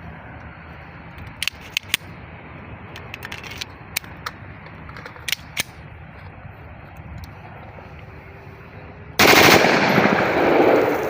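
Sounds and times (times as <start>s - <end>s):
pistol metallic clicks: 1.2s - 2.1s, 2.9s - 5.8s.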